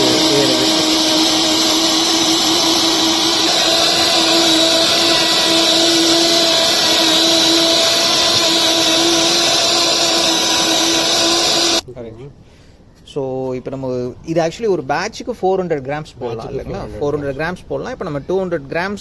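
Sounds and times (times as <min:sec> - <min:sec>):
electric grinder whirring: 0:00.0 - 0:11.8.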